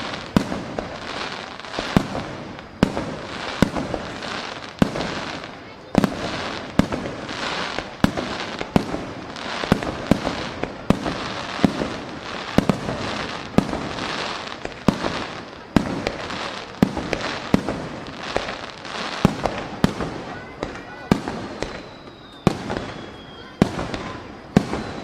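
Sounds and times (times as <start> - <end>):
fireworks booming: 0.0 - 25.0
fireworks crackling: 0.0 - 25.0.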